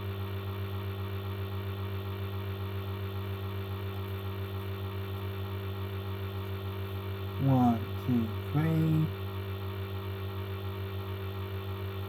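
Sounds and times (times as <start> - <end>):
electrical mains hum: 1.9 - 9.7.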